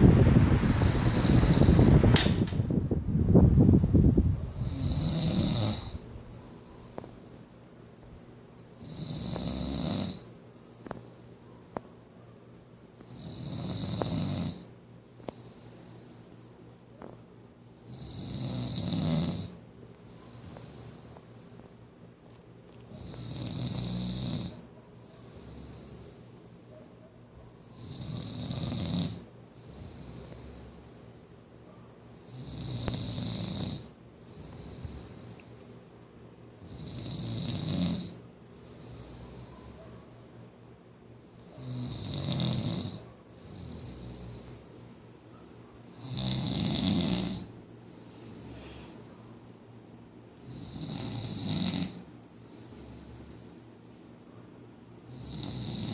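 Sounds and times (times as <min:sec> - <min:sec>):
man snoring: 0:00.6 - 0:02.0, 0:04.6 - 0:06.0, 0:08.8 - 0:10.3, 0:13.1 - 0:14.7, 0:17.8 - 0:19.6, 0:23.0 - 0:24.6, 0:27.8 - 0:31.0, 0:32.3 - 0:35.4, 0:36.6 - 0:39.5, 0:41.5 - 0:44.7, 0:46.0 - 0:48.9, 0:50.4 - 0:53.6, 0:55.0 - 0:55.9
quiet breathing: 0:04.4 - 0:07.6, 0:10.1 - 0:11.8, 0:12.9 - 0:18.4, 0:19.5 - 0:22.1, 0:22.7 - 0:37.0, 0:38.1 - 0:40.7, 0:42.9 - 0:51.0, 0:51.9 - 0:55.9
soft breath: 0:15.0 - 0:17.2, 0:20.0 - 0:22.0, 0:38.5 - 0:40.6, 0:47.8 - 0:50.0, 0:52.3 - 0:54.5.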